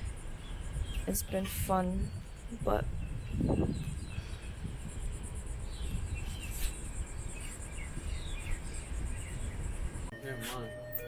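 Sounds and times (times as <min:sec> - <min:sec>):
bird chirps: 0:00.0 - 0:10.1
insect trilling: 0:02.1 - 0:10.1.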